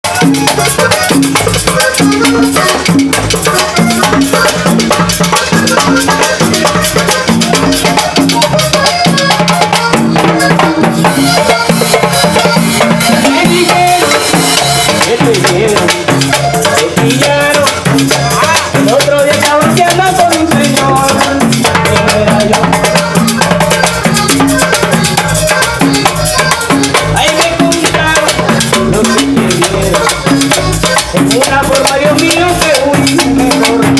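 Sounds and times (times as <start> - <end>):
band music: 0.0 - 33.9
drum and shaker percussion: 0.0 - 33.9.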